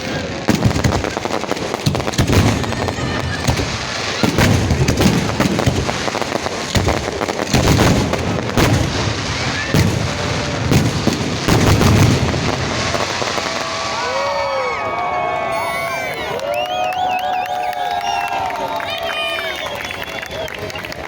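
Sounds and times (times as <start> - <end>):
deep firework booms: 0.0 - 14.4
fireworks bangs and crackling: 0.0 - 16.7.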